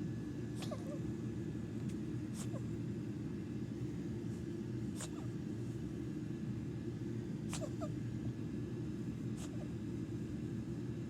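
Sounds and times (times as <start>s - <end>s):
steady low hum: 0.0s - 11.0s
pet coughing: 0.5s - 1.1s, 2.3s - 2.8s, 4.9s - 5.4s, 7.4s - 8.0s, 9.4s - 9.8s.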